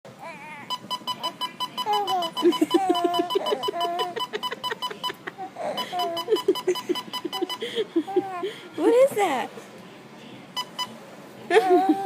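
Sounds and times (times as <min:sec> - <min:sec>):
baby cooing: 0:00.2 - 0:04.2, 0:05.4 - 0:06.4, 0:08.1 - 0:08.5
baby laughing: 0:00.2 - 0:08.6, 0:11.5 - 0:12.0
fast electronic beeps: 0:06.0 - 0:07.6.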